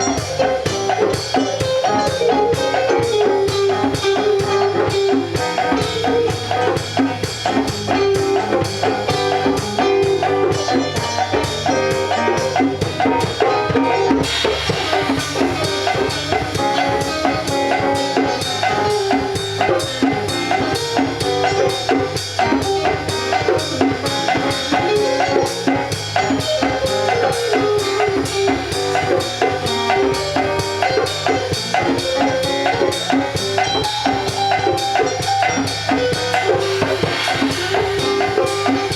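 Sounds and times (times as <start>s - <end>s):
instrumental music with drum beat: 0.0s - 38.9s
cymbals or hi-hat: 14.2s - 38.9s.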